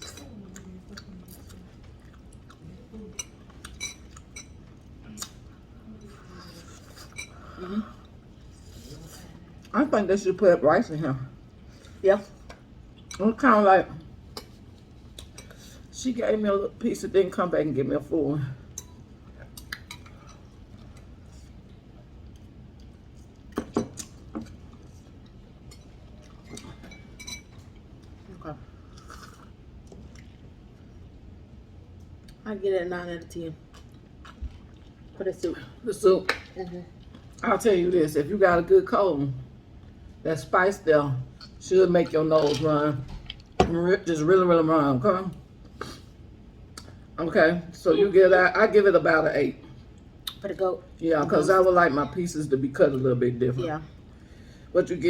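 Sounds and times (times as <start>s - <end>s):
low room hum: 0.0s - 55.0s
person chewing food: 0.5s - 2.7s, 19.3s - 26.9s, 27.7s - 31.0s, 33.7s - 35.2s.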